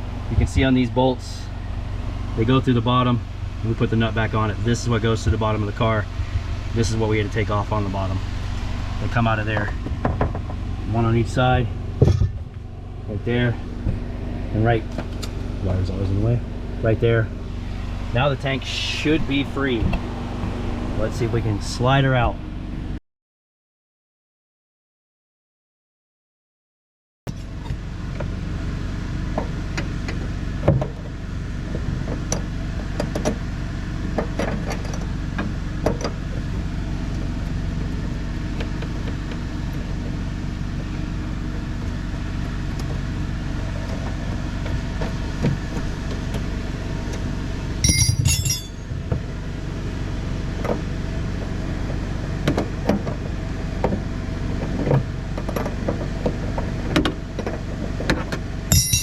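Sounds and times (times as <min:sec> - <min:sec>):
low mechanical hum: 0:00.0 - 0:23.0, 0:27.3 - 0:59.0
tools and metal parts clinking: 0:47.8 - 0:48.8, 0:58.7 - 0:59.0
loud metallic clatter: 0:47.8 - 0:48.9, 0:58.7 - 0:59.0.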